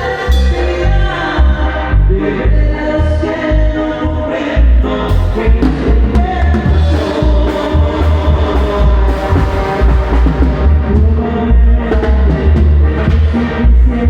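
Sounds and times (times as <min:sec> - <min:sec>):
amplified live band playing: 0:00.0 - 0:14.0
heavy bass line: 0:00.0 - 0:14.0.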